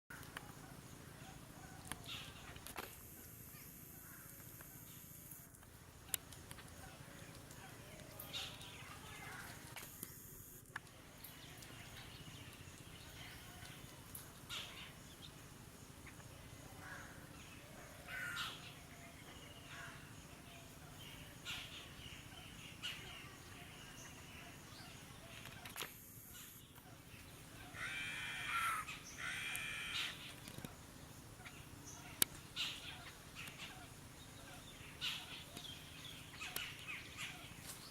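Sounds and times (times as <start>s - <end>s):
faint outdoor background noise: 0.1s - 37.9s
crows cawing: 4.0s - 4.5s, 18.1s - 18.6s, 27.7s - 30.2s.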